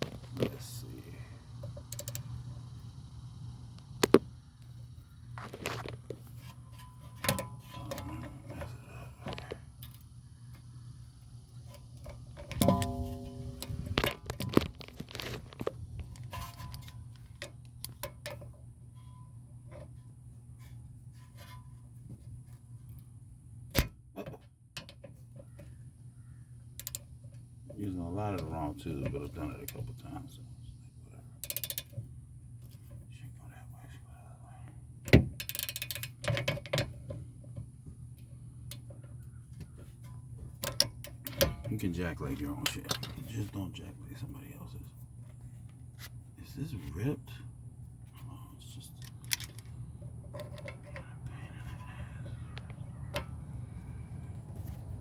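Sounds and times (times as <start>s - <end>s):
steady low hum: 0.0s - 55.0s
tools clanking on metal: 12.4s - 15.6s.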